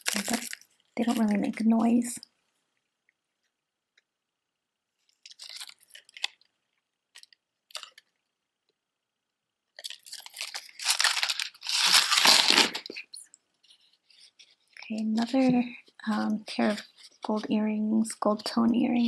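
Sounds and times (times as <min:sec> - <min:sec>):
plastic packaging crinkling: 0:00.0 - 0:01.7, 0:05.1 - 0:08.0, 0:09.8 - 0:13.2.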